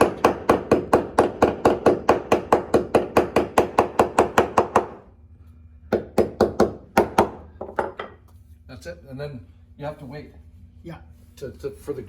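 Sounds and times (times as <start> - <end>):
hammer tapping wooden plug: 0.0 - 5.0, 5.9 - 8.2.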